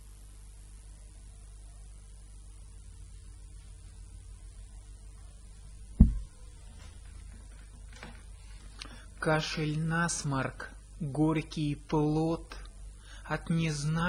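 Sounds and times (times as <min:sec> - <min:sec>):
low electrical hum: 0:00.0 - 0:14.0
loud low thump: 0:06.0 - 0:06.4.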